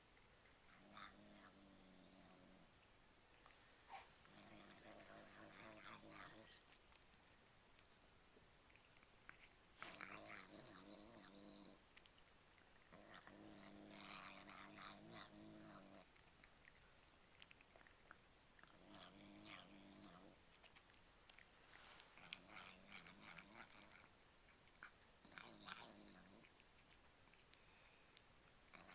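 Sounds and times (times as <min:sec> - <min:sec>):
cat growling low: 0:00.6 - 0:02.7, 0:03.9 - 0:06.7, 0:09.8 - 0:11.8, 0:12.8 - 0:16.2, 0:18.5 - 0:20.5, 0:21.8 - 0:26.6, 0:28.7 - 0:28.9.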